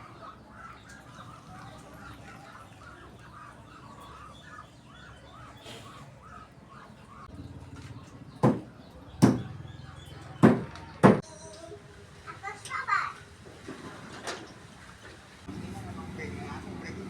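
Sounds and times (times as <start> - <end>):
chicken clucking and chirping: 0.0 - 11.1
loud sharp knocks: 8.4 - 9.5, 10.4 - 11.2.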